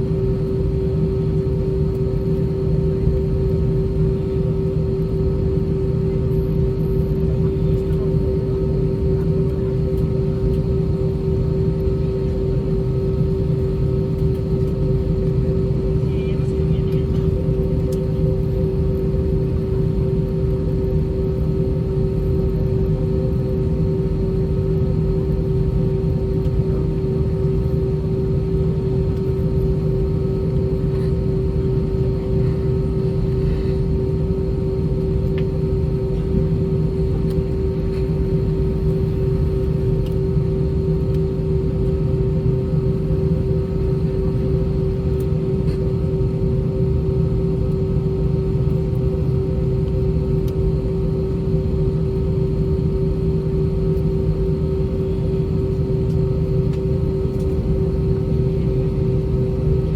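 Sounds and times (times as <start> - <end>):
jet engine drone in cabin: 0.0 - 59.9.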